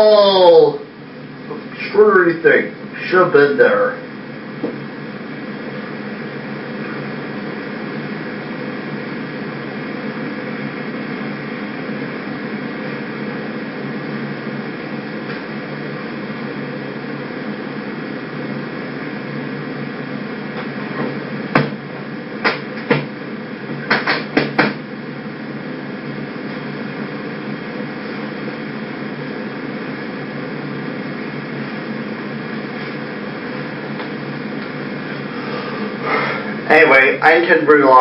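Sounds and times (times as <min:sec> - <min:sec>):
background hiss and hum: 0:00.0 - 0:38.0
sharp knocks: 0:21.0 - 0:21.8, 0:22.4 - 0:23.1, 0:23.8 - 0:24.8.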